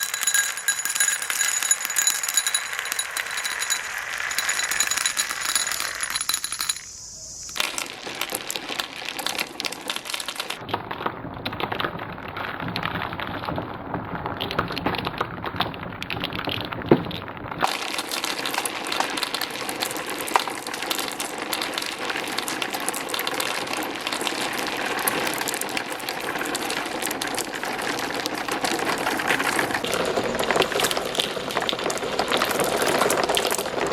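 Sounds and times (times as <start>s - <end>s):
marbles clattering down a track: 0.0s - 7.0s, 7.6s - 33.9s
steady ringing tones: 0.0s - 7.5s.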